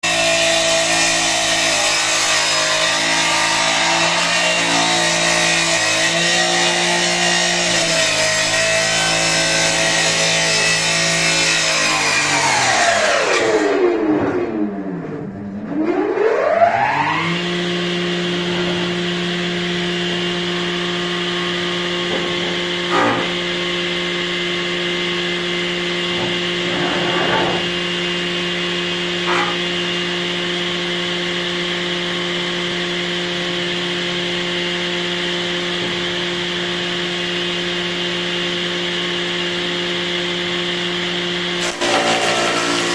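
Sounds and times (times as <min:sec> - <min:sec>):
power tool motor running: 0:17.2 - 0:42.9
tool cutting into wood: 0:22.0 - 0:23.4, 0:41.6 - 0:42.9.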